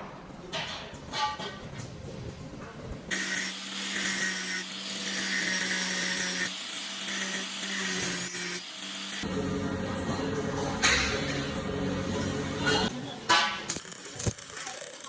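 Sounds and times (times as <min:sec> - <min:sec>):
power tool running: 0:03.1 - 0:09.4.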